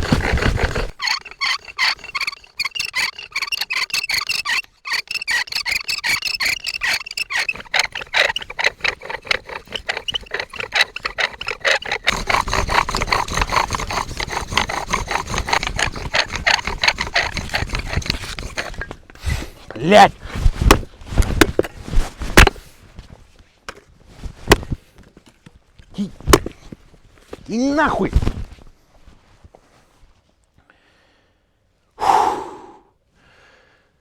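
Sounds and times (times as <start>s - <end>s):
wood rubbing and squeaking on wood: 0.0s - 20.0s.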